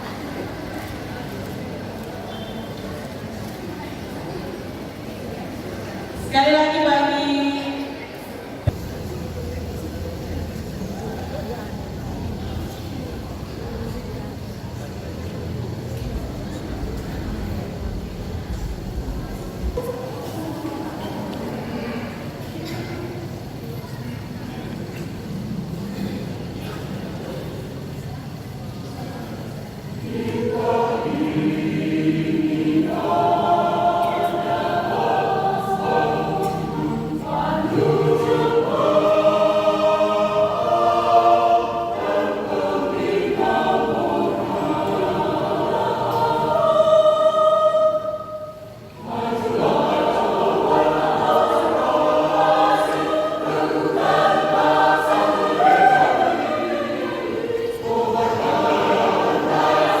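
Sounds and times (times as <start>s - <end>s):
church choir singing a hymn: 0.0s - 3.0s, 29.4s - 60.0s.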